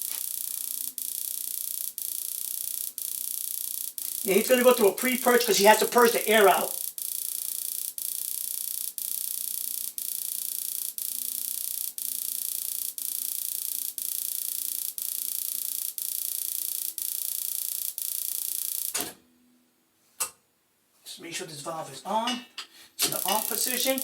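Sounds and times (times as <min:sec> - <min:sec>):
spark igniter crackling: 0:00.0 - 0:07.0, 0:23.0 - 0:24.0.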